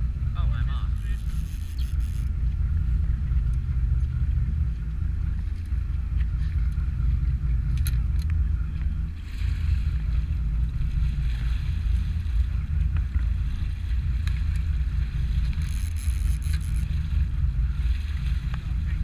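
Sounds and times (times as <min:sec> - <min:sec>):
boat engine rumbling: 0:00.0 - 0:19.0.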